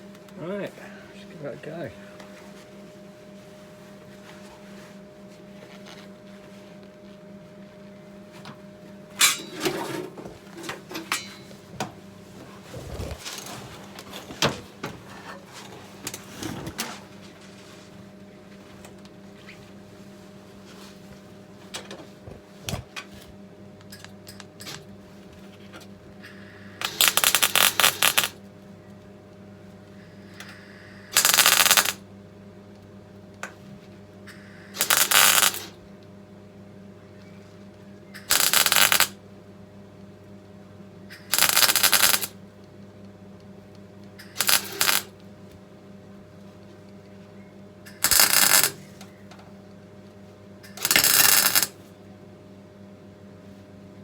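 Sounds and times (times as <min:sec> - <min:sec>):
low electrical hum: 0:00.0 - 0:54.0
welding arc crackling: 0:12.8 - 0:13.2, 0:26.8 - 0:28.4, 0:31.1 - 0:32.0, 0:34.8 - 0:35.7, 0:38.2 - 0:39.2, 0:41.2 - 0:42.4, 0:44.3 - 0:45.1, 0:48.0 - 0:48.8, 0:50.8 - 0:51.8.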